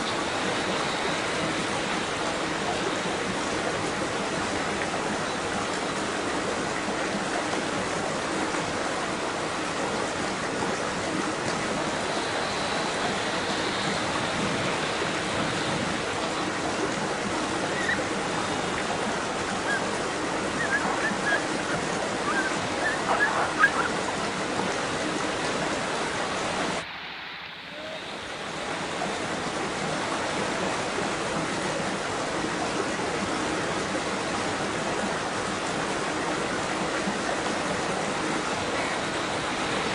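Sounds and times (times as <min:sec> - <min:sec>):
water splashes: 0:00.0 - 0:26.9
water rushing: 0:00.0 - 0:39.9.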